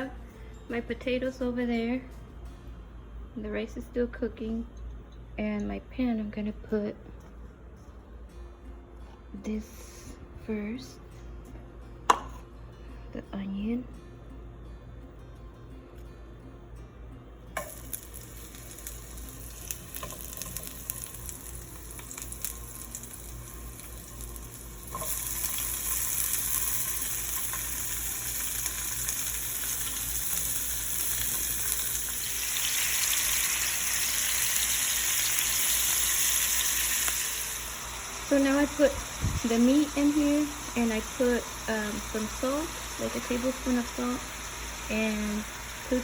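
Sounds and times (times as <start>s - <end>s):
onion sizzling in a frying pan: 17.6s - 46.0s.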